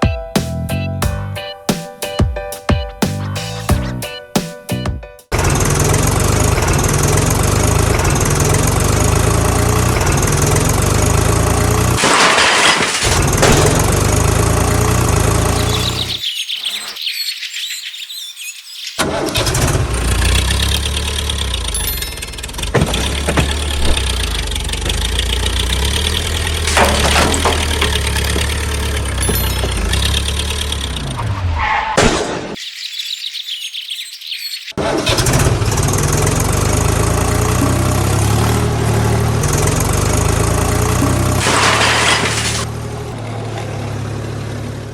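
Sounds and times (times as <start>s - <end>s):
heavy diesel engine running: 5.3s - 16.2s, 19.0s - 31.4s, 34.8s - 44.9s
birds chirping: 15.2s - 19.0s, 20.3s - 34.8s.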